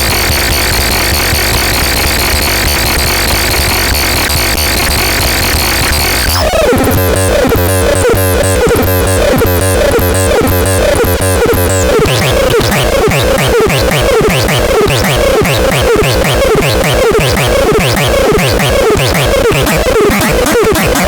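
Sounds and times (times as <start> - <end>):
electronic synthesizer music: 6.3 - 21.0.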